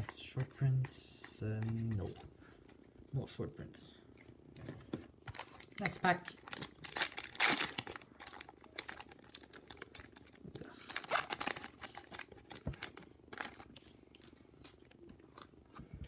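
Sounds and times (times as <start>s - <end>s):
trading cards clicking and rustling: 0.0s - 2.8s.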